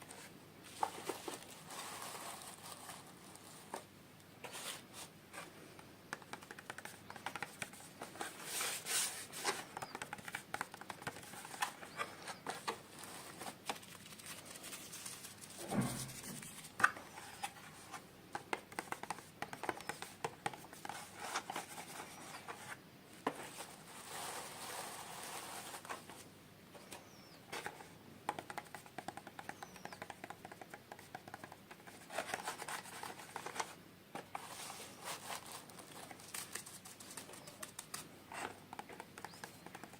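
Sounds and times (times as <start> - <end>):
plastic packaging handled: 0.6 - 5.1.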